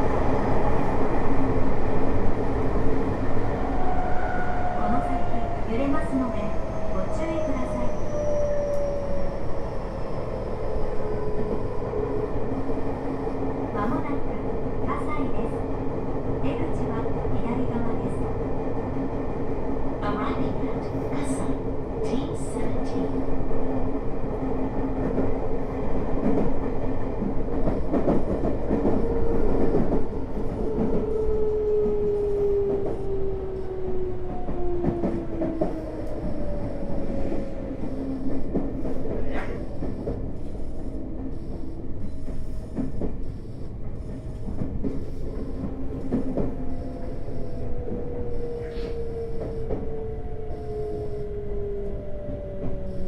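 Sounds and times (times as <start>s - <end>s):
train rumble: 0.0s - 53.0s.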